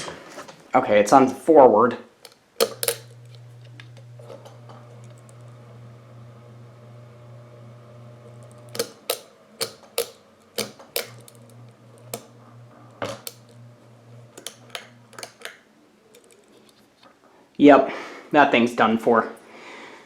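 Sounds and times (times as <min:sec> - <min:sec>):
sharp clicks and knocks: 0:02.2 - 0:05.5, 0:08.3 - 0:15.6, 0:16.2 - 0:16.8
ceiling fan motor humming: 0:02.2 - 0:16.8.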